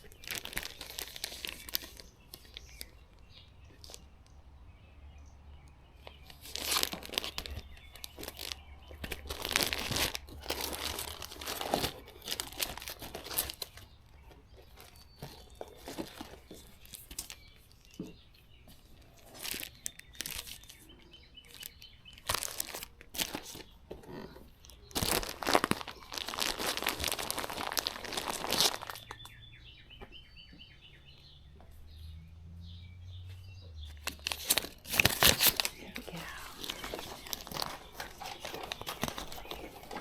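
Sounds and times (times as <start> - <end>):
rustling and crinkling handling noise: 0.0 - 40.0.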